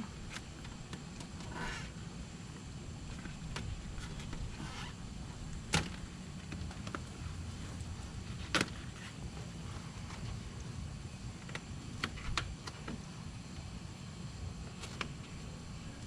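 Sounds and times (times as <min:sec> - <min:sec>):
low steady hum: 0:00.0 - 0:16.0
faint ticks and rustles: 0:06.3 - 0:13.7.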